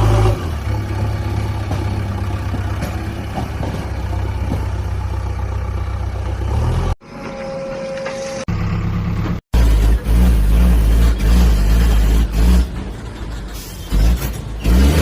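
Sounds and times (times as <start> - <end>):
heavy vehicle engine idling: 0.4 - 6.6.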